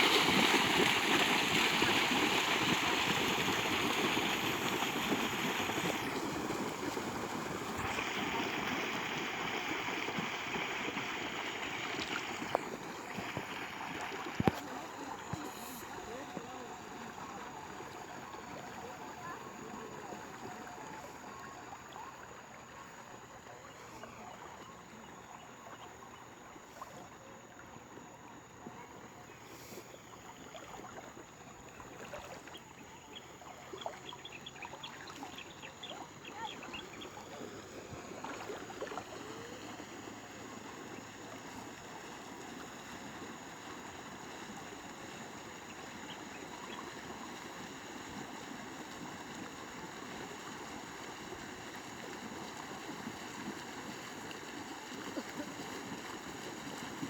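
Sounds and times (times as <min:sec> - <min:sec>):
splashing and crackling: 0:00.0 - 0:19.0
rushing water: 0:00.0 - 0:57.0.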